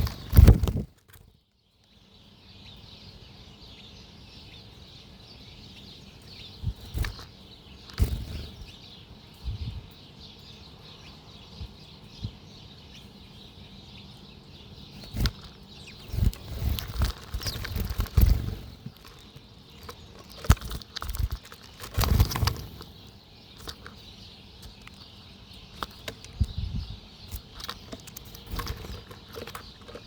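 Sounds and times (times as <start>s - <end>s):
small birds' wings fluttering: 0.0s - 1.4s, 5.7s - 10.0s, 14.8s - 30.0s
high-pitched background of birds: 0.0s - 30.0s.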